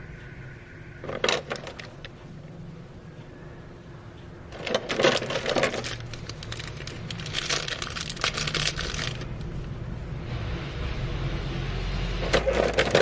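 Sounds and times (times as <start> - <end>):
packaging crinkling: 4.6 - 9.5.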